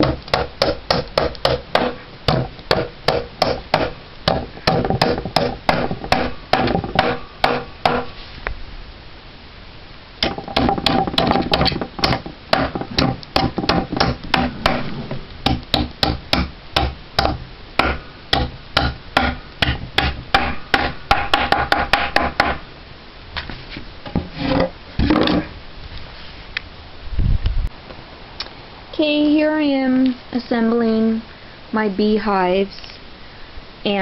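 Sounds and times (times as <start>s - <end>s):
dull knocks: 0.0s - 8.1s, 10.2s - 22.6s
hammer blows on wood: 0.0s - 8.2s, 10.2s - 22.6s.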